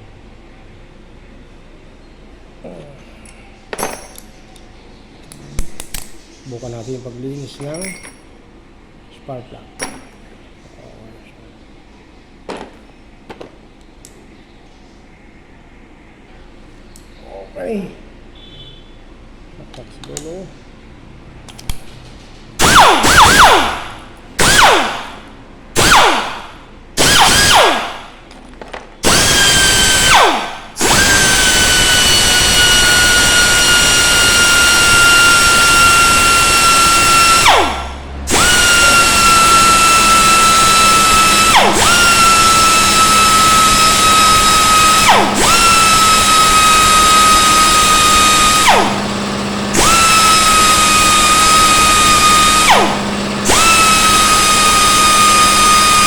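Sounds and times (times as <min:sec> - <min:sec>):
air die grinder whining: 0:25.8 - 0:28.0, 0:29.0 - 0:56.0.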